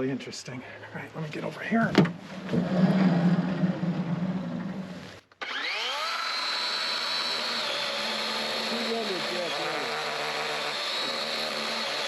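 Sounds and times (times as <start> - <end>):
sawmill machinery hum: 2.5 - 12.0
motor winding up to high whine: 5.4 - 12.0.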